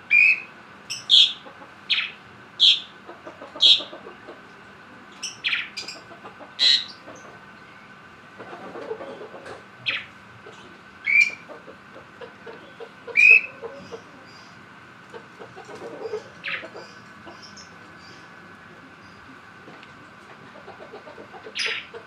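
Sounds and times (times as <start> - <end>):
lovebird shrill calls: 0.1 - 2.9, 11.0 - 11.4
soft bird chattering: 0.1 - 4.4, 5.1 - 7.9, 8.9 - 19.4, 20.6 - 22.0.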